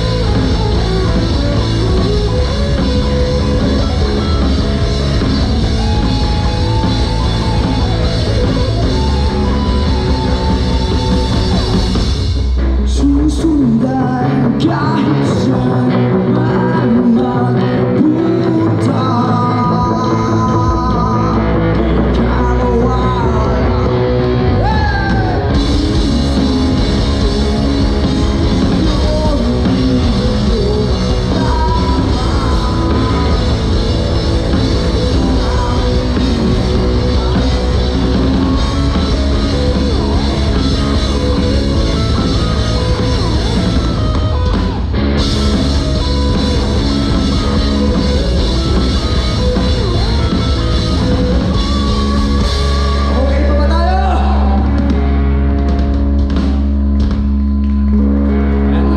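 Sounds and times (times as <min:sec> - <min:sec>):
rock band playing: 0:00.0 - 0:58.9
person singing: 0:12.8 - 0:43.8.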